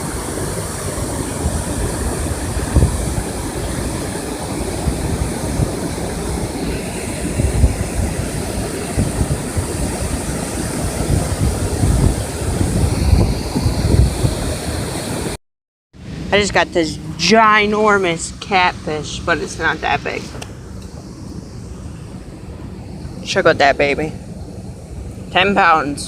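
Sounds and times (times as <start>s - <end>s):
rushing water: 0.0s - 15.4s
wind buffeting microphone: 0.0s - 15.4s.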